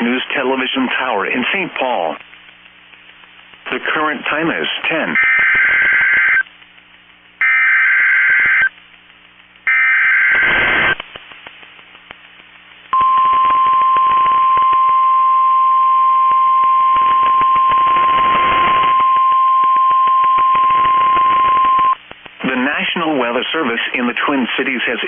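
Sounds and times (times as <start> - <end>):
steady warning alarm tone: 5.2 - 6.4, 7.4 - 8.7, 9.7 - 10.6.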